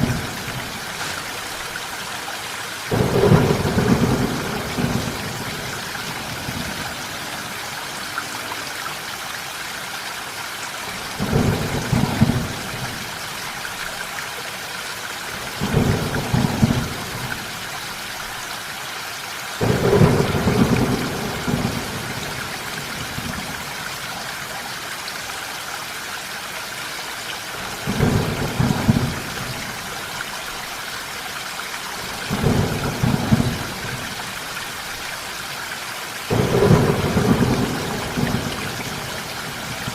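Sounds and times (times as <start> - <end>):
heavy rain: 0.0 - 39.9
thunder rumbling: 2.9 - 7.0, 11.2 - 13.2, 15.6 - 17.6, 19.6 - 23.7, 27.8 - 29.8, 32.3 - 34.3, 36.3 - 39.9.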